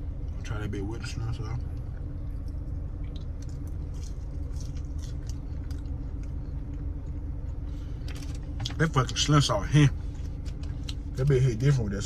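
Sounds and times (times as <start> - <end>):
steady low hum: 0.0 - 12.0
person chewing fries: 1.6 - 9.3, 9.9 - 11.3.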